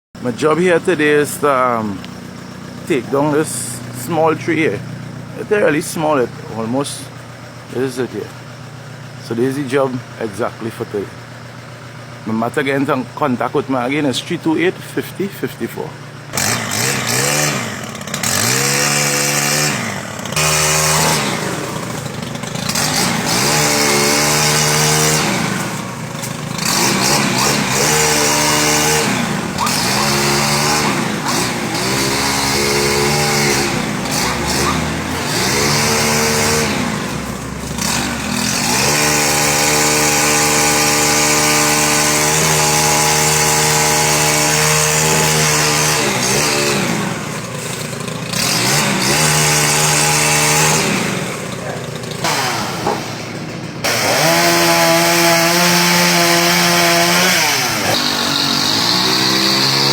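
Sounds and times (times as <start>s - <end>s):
chainsaw engine revving: 0.2s - 59.9s.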